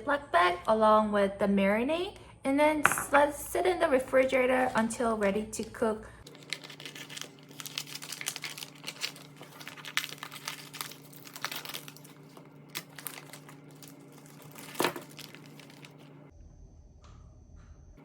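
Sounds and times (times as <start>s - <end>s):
steady low hum: 0.0s - 18.0s
plastic bag crinkling: 6.3s - 16.3s.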